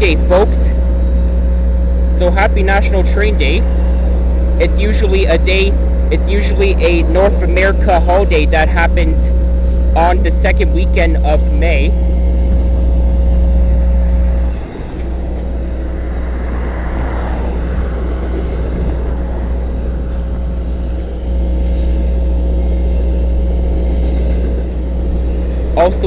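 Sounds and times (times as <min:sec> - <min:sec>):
freight train rumbling past: 0:02.4 - 0:22.2.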